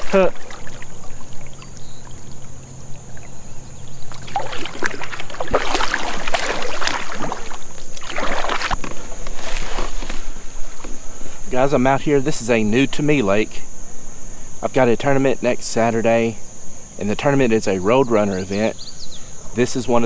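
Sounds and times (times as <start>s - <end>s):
paddle strokes splashing water: 0.0s - 11.6s.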